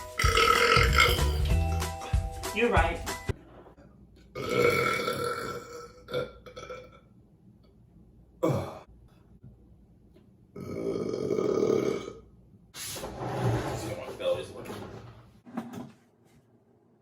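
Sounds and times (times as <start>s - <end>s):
person burping: 0.2s - 1.6s, 4.3s - 7.1s, 8.4s - 8.9s, 10.6s - 12.4s.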